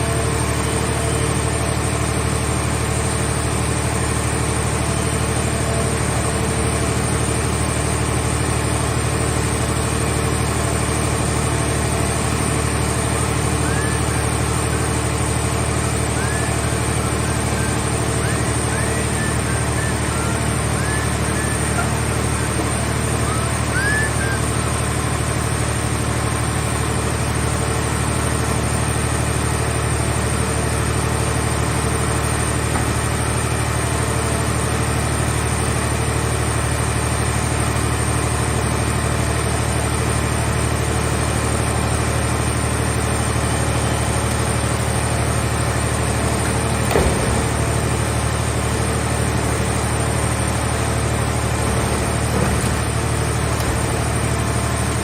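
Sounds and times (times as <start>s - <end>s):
baler engine humming: 0.0s - 55.0s
short knock: 46.9s - 47.6s.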